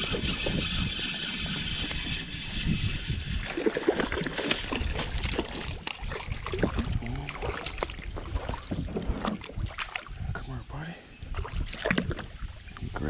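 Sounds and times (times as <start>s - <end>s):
wind on microphone: 0.0s - 13.0s
fish splashing at water surface: 3.4s - 10.1s.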